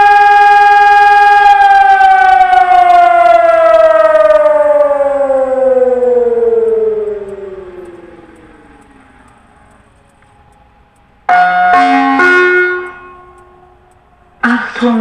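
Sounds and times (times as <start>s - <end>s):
electronic siren winding down: 0.0s - 10.0s.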